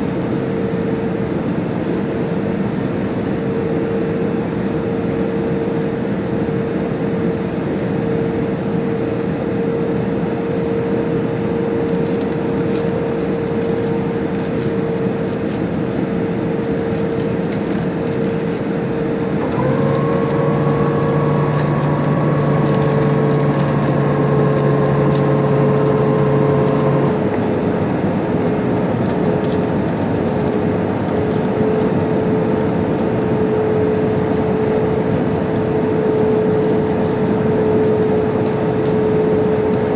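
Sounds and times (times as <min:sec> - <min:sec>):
aircraft cabin engine rush: 0:00.0 - 0:39.9
steady whine: 0:08.9 - 0:39.9.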